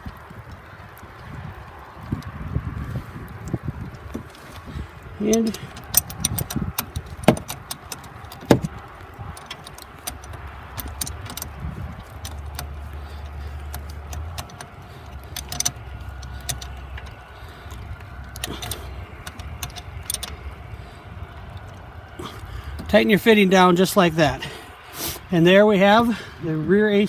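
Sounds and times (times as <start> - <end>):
wrench clicking on metal fitting: 5.3 - 8.7, 9.4 - 20.4.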